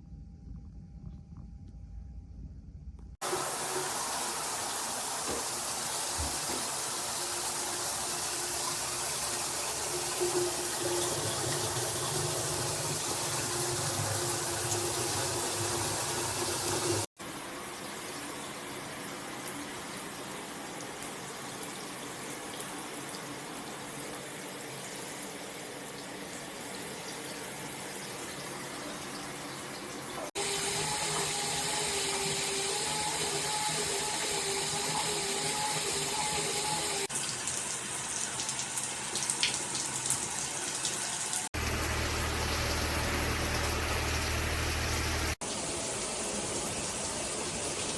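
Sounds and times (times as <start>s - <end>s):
water spraying from shower head: 3.2s - 17.1s, 30.3s - 37.1s, 39.2s - 47.9s.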